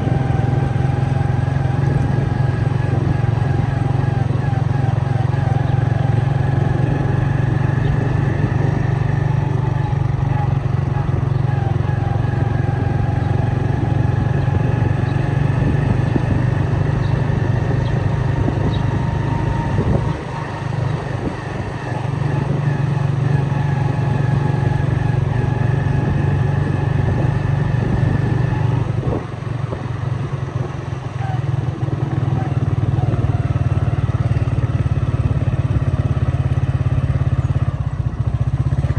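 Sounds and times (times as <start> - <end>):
vehicle engine running: 0.0 - 38.9.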